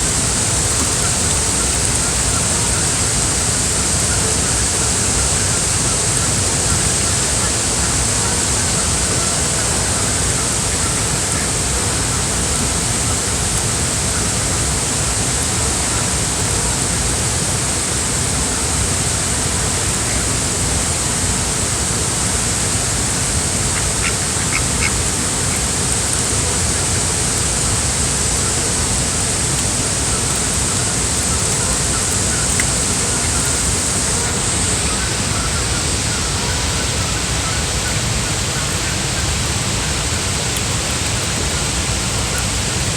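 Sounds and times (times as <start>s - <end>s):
steady rushing noise: 0.0s - 42.9s
ducks quacking: 0.1s - 13.3s, 23.4s - 42.9s.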